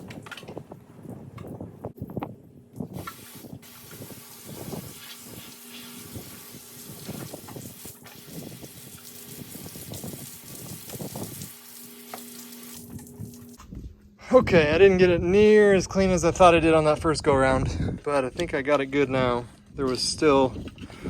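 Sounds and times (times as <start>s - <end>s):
hose nozzle spraying water: 2.9s - 13.6s.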